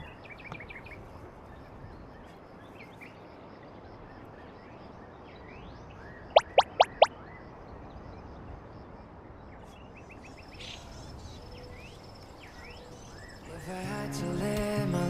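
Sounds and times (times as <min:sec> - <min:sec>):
faint bird chirps: 0:00.0 - 0:08.3, 0:09.4 - 0:13.7
outdoor hush: 0:06.3 - 0:07.4
loud upward-sweeping chirps: 0:06.4 - 0:07.1.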